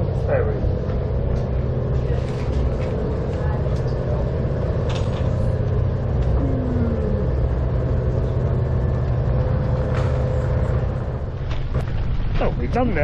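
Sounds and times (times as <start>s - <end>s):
large engine rumbling: 0.0s - 13.0s
short falling whine: 6.2s - 10.5s.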